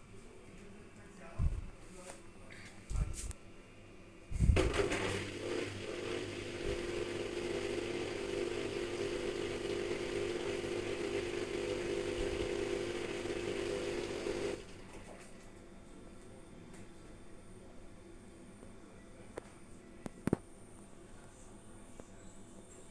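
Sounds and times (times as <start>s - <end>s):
washer-dryer motor humming: 4.4s - 15.4s.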